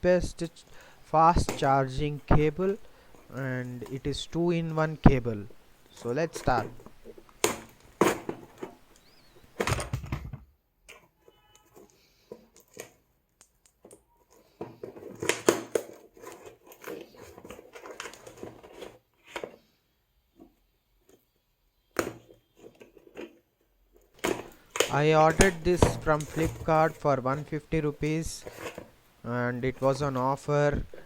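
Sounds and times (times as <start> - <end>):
plastic and cardboard crinkling: 0.2 - 10.0, 13.7 - 19.6, 22.2 - 31.0.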